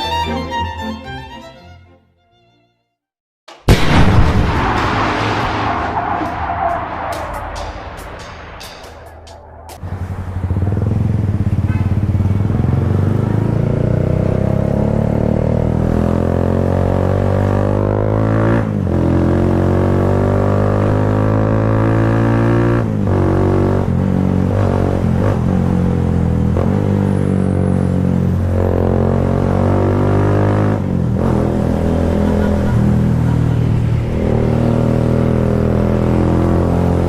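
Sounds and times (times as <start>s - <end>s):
motorcycle engine accelerating: 9.8s - 37.0s.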